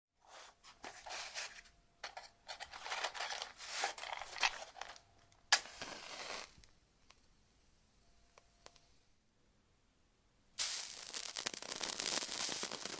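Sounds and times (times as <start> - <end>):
rustling crinkling: 2.5 - 5.2.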